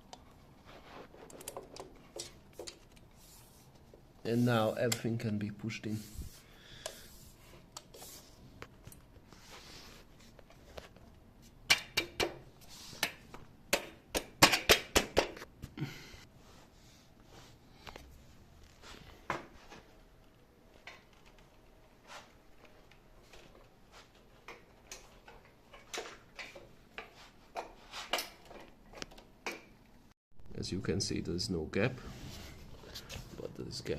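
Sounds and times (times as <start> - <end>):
door threshold parts clicking and knocking: 11.6 - 15.4.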